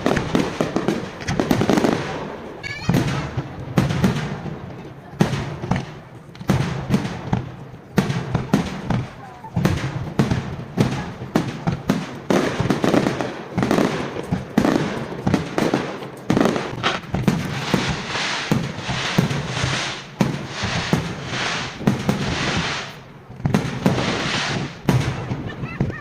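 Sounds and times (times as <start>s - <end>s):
fireworks crackling: 0.0s - 26.0s
fireworks shells bursting: 14.1s - 25.8s.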